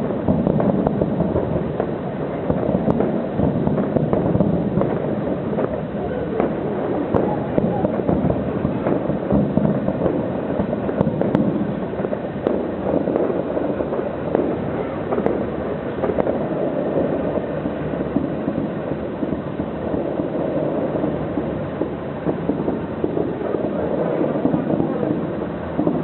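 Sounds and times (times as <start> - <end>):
fireworks bangs and crackles: 0.0 - 26.0.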